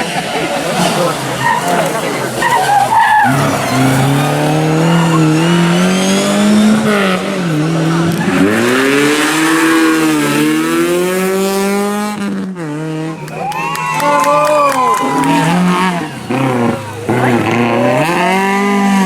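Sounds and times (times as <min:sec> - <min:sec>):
rally car engine revving: 0:00.0 - 0:19.0.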